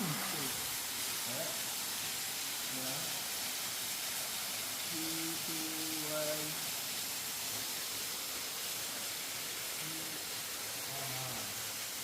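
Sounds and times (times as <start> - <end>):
waterfall rushing: 0.0 - 12.0
faint voice: 10.9 - 11.6.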